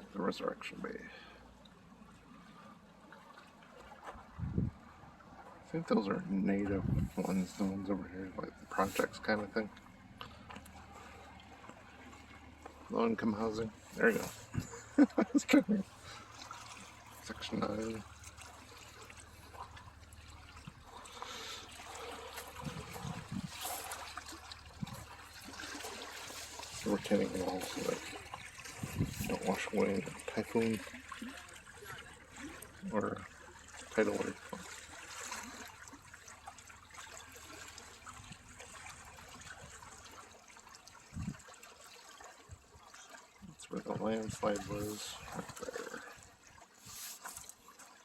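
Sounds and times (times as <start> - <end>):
water lapping on shoreline: 0.0 - 48.0
steady low rumble: 5.8 - 33.7.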